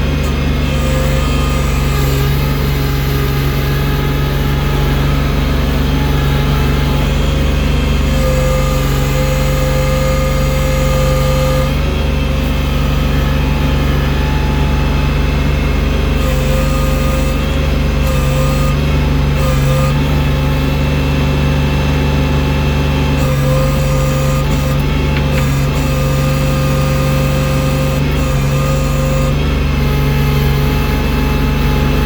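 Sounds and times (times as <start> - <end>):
snow-clearing machine engine droning: 0.0 - 32.0.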